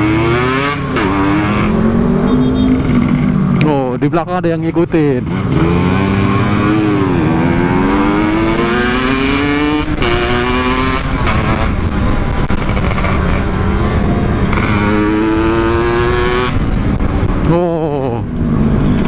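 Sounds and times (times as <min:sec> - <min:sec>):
two-stroke motorcycle engine revving: 0:00.0 - 0:04.1, 0:04.7 - 0:19.0
wind on microphone: 0:06.2 - 0:17.6.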